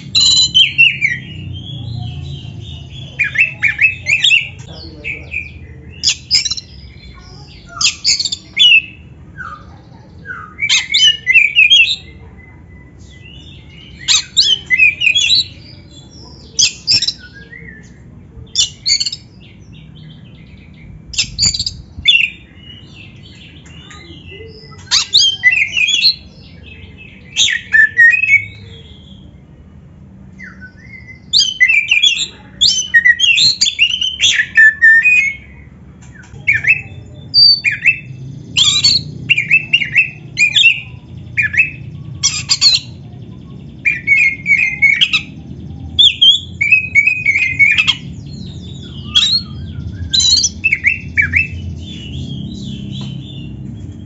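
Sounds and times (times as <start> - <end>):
magpie-robin singing whistles: 0.0 - 1.7, 5.4 - 6.8, 7.6 - 12.1, 16.5 - 18.0, 18.6 - 19.4, 21.1 - 22.5, 23.9 - 26.3, 27.3 - 29.2, 30.4 - 35.6, 36.2 - 43.0, 43.8 - 45.4, 46.0 - 53.6.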